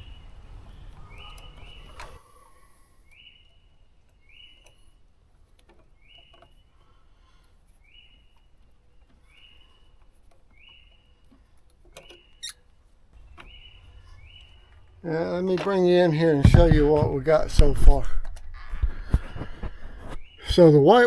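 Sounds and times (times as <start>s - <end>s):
bird chirping: 0.0s - 2.4s, 3.0s - 5.0s, 5.9s - 7.0s, 7.8s - 11.3s, 13.2s - 21.0s.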